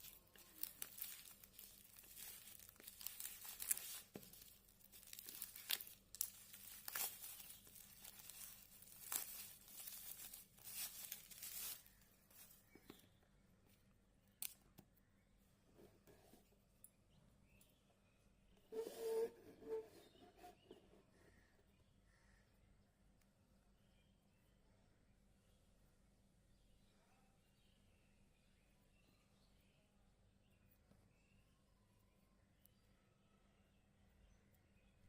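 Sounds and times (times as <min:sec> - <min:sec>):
packaging torn and crinkled: 0:00.0 - 0:12.6.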